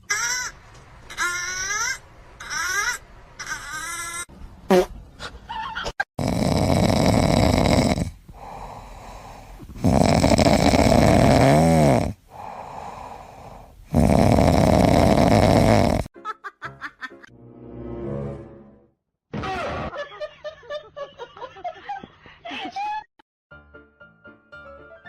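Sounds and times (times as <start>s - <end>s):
loud snoring: 6.2s - 16.1s
quiet breaths: 7.8s - 11.0s, 11.9s - 14.0s.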